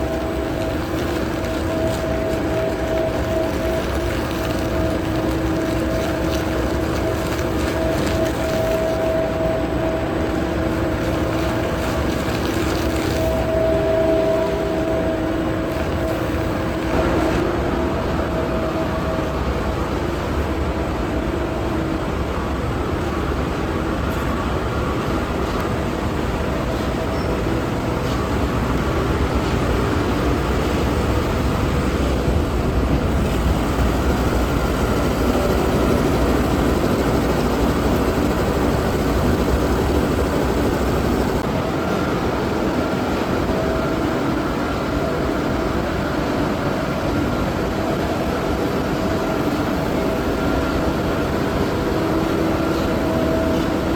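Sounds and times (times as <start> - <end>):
steady humming tones: 0.0 - 53.9
loud mechanical din: 16.9 - 19.8.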